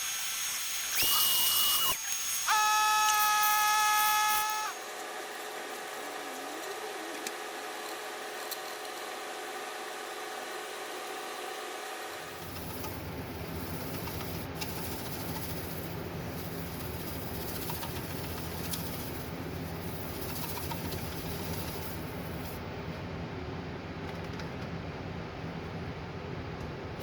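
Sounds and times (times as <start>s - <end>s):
motor hum: 0.8s - 24.7s
constant hiss: 12.3s - 27.0s.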